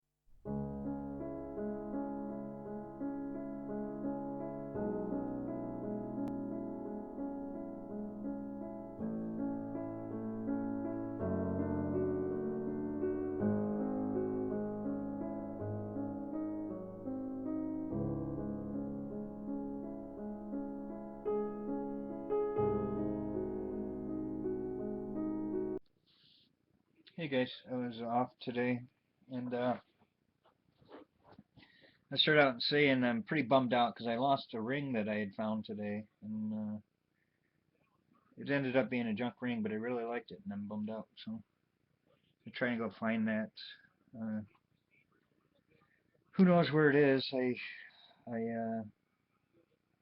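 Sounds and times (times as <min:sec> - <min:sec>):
gentle keyboard melody: 0:00.4 - 0:25.8
slow piano chords: 0:00.4 - 0:25.8.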